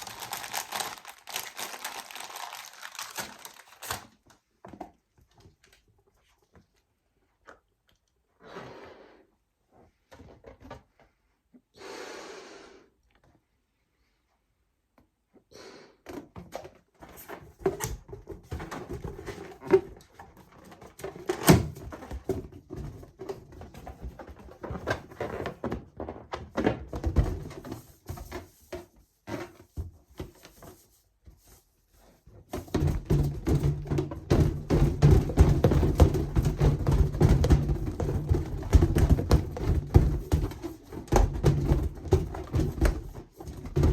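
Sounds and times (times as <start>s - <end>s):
rubber balloons squeaking and knocking: 32.4s - 43.9s.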